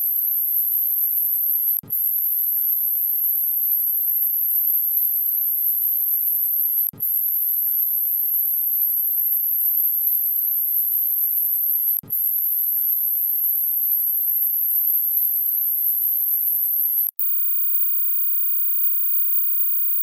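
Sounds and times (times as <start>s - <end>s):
click: 17.2s - 20.0s
high-pitched electronic tone: 17.2s - 20.0s.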